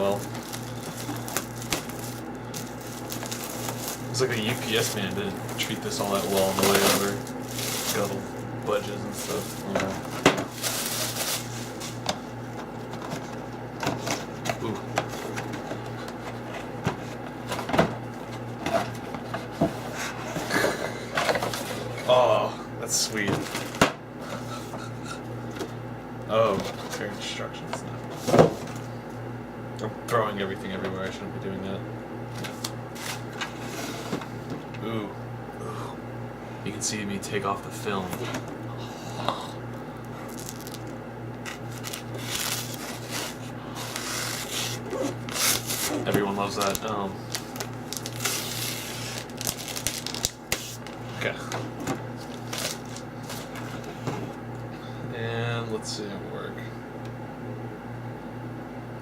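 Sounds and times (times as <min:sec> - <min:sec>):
plastic film peeling: 0:00.1 - 0:08.2, 0:40.2 - 0:51.0, 0:52.2 - 0:53.6.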